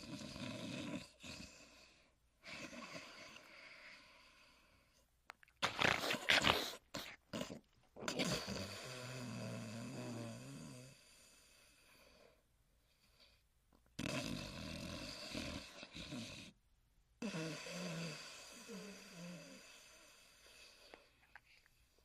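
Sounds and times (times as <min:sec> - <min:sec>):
cartoon dog rasping snore: 0:00.0 - 0:03.5, 0:05.6 - 0:11.3, 0:14.0 - 0:16.6, 0:17.2 - 0:20.8.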